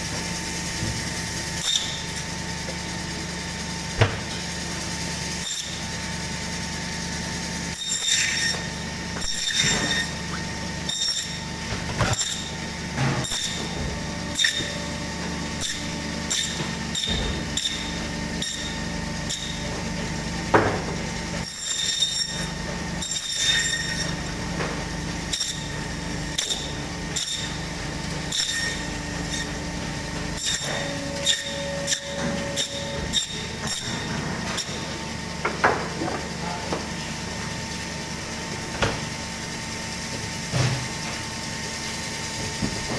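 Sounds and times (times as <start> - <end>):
meat bandsaw humming: 0.0 - 42.9.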